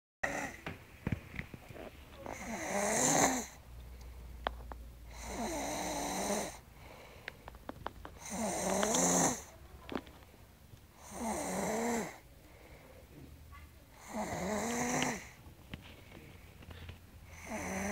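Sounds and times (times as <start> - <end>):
woman snoring: 0.2 - 0.6, 1.8 - 3.6, 5.1 - 6.6, 8.2 - 9.5, 11.0 - 12.2, 14.0 - 15.4, 17.3 - 17.9
quiet breathing: 1.3 - 17.9.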